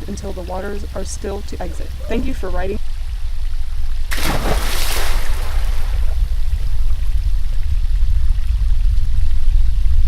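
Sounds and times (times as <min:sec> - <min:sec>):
loud low rumble: 0:05.3 - 0:10.0.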